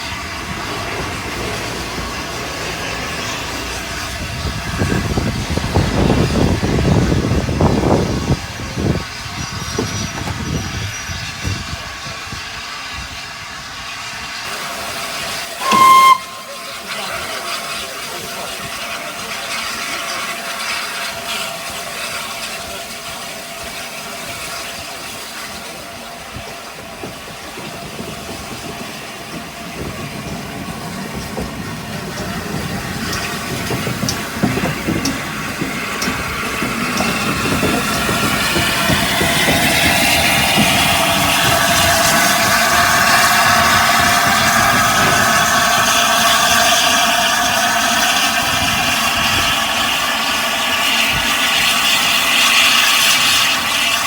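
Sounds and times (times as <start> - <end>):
steam hissing: 0.0 - 54.0
steam whistle blast: 15.4 - 16.9.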